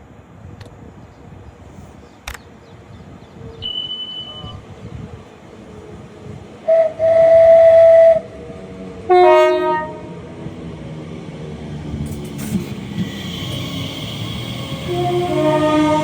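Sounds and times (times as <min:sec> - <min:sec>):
rumble of moving train: 0:00.0 - 0:16.0
train horn: 0:06.6 - 0:08.4, 0:09.1 - 0:10.2, 0:14.7 - 0:16.0.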